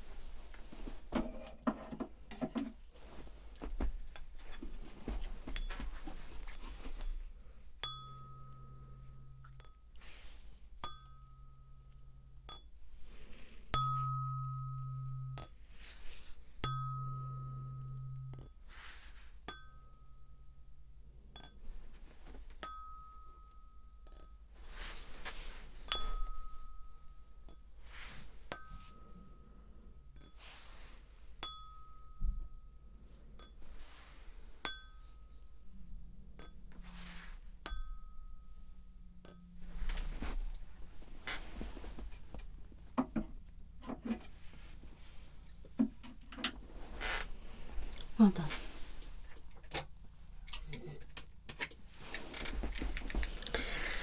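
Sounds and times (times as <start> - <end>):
soft rustling swishes: 0.0 - 1.1, 2.8 - 7.6, 24.6 - 27.0, 39.6 - 43.0, 46.6 - 49.4
tuning fork ringing: 7.8 - 10.0, 10.8 - 12.8, 13.7 - 15.6, 16.6 - 18.6, 19.4 - 21.6, 22.6 - 24.8, 25.9 - 27.8, 28.5 - 30.5, 31.4 - 33.6, 34.6 - 36.8, 37.6 - 40.6.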